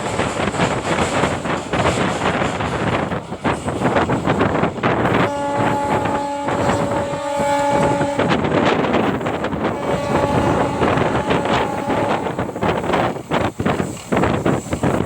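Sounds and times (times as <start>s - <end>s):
train wheels clattering on rail joints: 0.0s - 15.0s
wind rushing: 0.0s - 15.0s
locomotive air horn blast: 5.0s - 13.1s.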